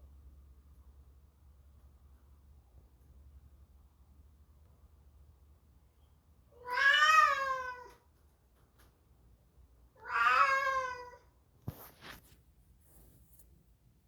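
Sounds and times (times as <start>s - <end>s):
cat meowing: 6.6s - 8.0s, 10.0s - 11.2s.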